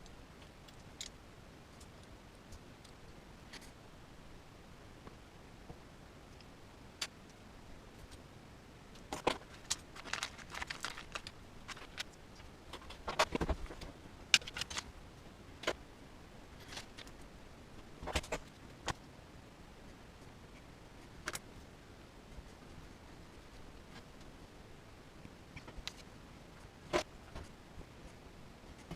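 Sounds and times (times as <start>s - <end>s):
small plastic parts clicking: 9.0s - 14.9s.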